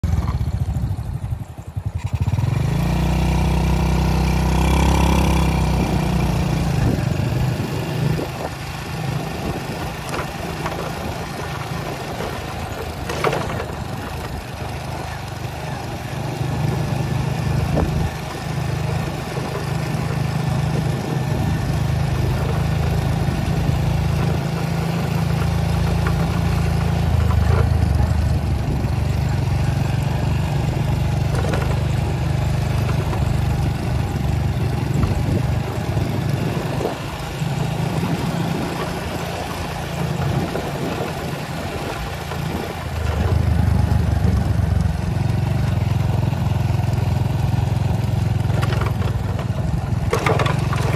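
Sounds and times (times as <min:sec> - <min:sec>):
vehicle engine rumbling: 0:00.0 - 0:50.9.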